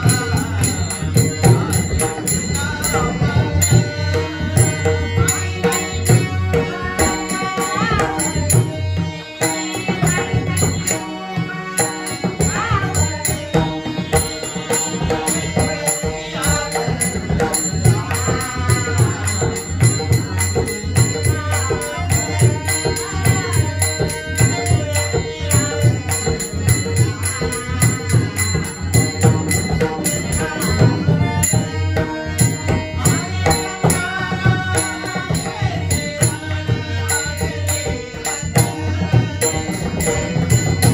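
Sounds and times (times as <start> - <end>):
man singing devotional song: 0.0 - 40.9.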